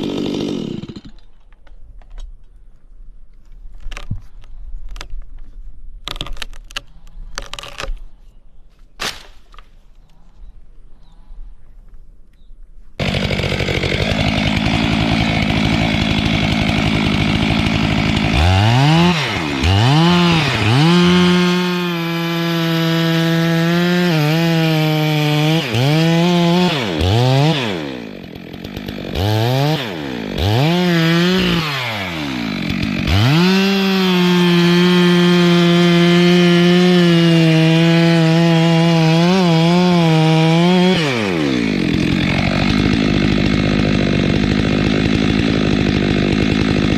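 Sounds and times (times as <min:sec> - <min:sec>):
chainsaw revving and cutting wood: 0:00.0 - 0:01.3, 0:13.0 - 0:46.9.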